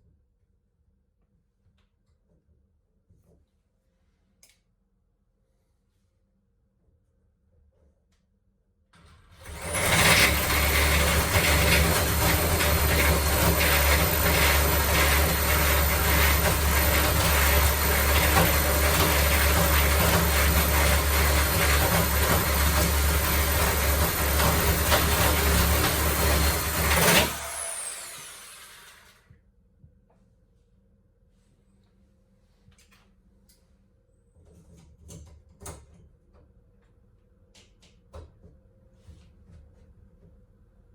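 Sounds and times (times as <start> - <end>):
electric drill whining: 9.4 - 29.2.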